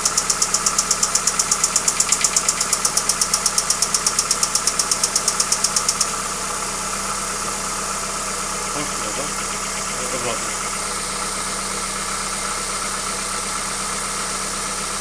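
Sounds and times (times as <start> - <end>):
sharp regular engine knock: 0.0 - 6.3
car engine running: 0.0 - 15.0.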